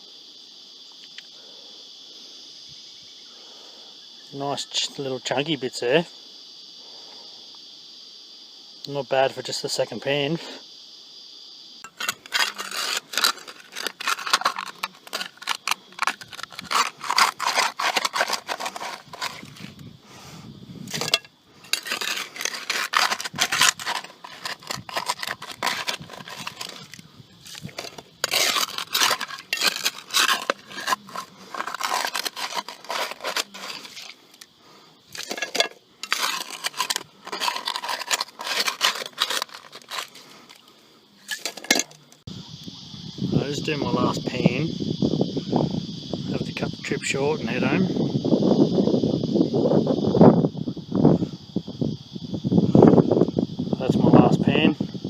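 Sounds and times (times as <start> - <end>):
gritty scraping of gravel: 11.8 - 19.8, 20.8 - 34.5, 35.1 - 42.2
stones clicking and clinking: 11.9 - 19.7, 20.9 - 34.2, 35.1 - 40.6.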